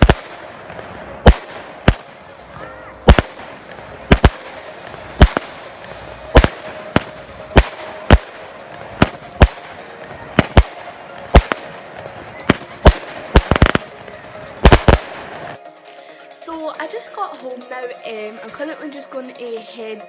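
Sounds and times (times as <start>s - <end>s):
fireworks exploding: 0.0s - 15.6s.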